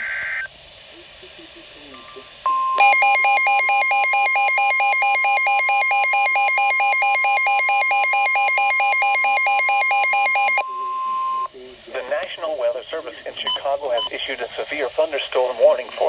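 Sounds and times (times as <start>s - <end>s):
two-tone alarm: 2.5s - 11.5s.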